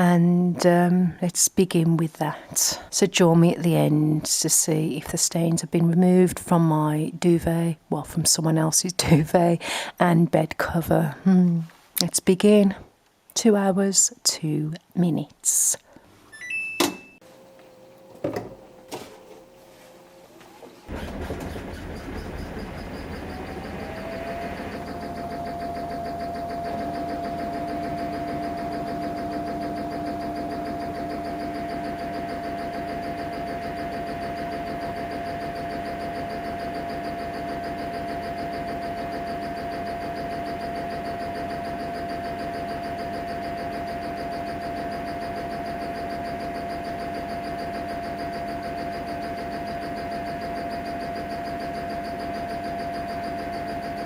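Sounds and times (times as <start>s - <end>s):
mechanical hum: 0.0s - 54.0s
washing machine whine: 16.2s - 54.0s
lower hum: 17.2s - 54.0s.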